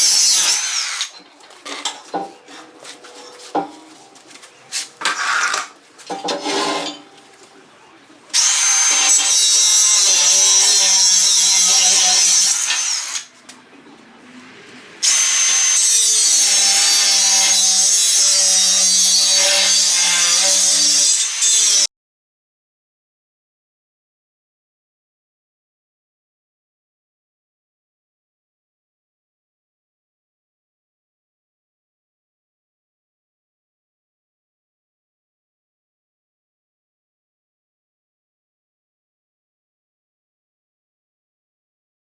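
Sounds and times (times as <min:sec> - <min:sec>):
angle grinder cutting steel: 0:00.0 - 0:04.0, 0:04.8 - 0:07.1, 0:08.3 - 0:13.4, 0:14.9 - 0:21.9.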